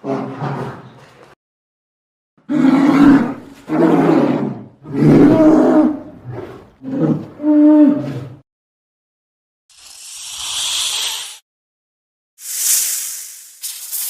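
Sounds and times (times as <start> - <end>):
big cat roaring: 2.5 - 8.4.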